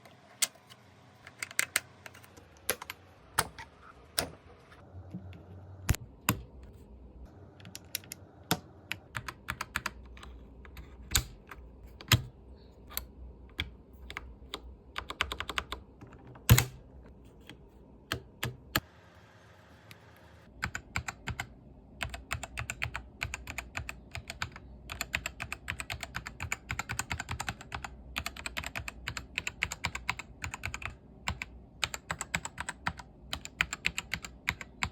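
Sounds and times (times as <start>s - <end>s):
mechanical keyboard typing: 7.6s - 12.3s, 13.0s - 16.8s, 20.6s - 34.9s.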